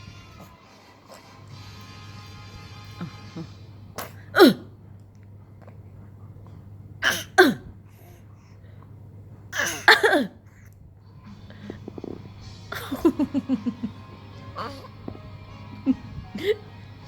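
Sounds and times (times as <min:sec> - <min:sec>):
person fake coughing: 0:03.0 - 0:04.7, 0:07.0 - 0:07.7, 0:09.6 - 0:10.4, 0:16.4 - 0:16.6.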